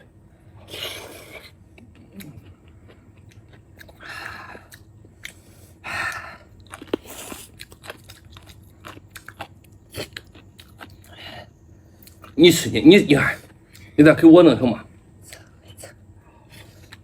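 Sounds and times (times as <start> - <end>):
person chewing: 0.6 - 11.4, 12.0 - 12.4, 15.2 - 17.0.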